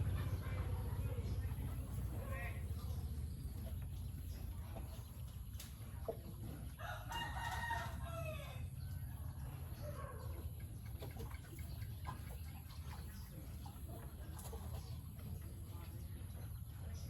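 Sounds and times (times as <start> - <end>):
rooster crowing: 6.8 - 8.7.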